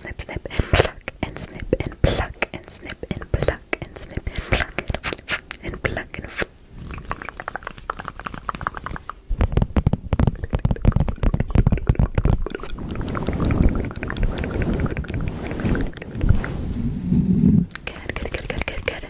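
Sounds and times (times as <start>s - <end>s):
hands rubbing fluffy microphone cover: 12.6s - 18.9s.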